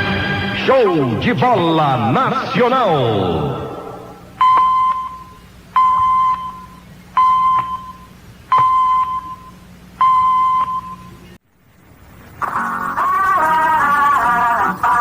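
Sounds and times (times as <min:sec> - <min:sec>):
short time signal beeps: 0:04.4 - 0:11.2.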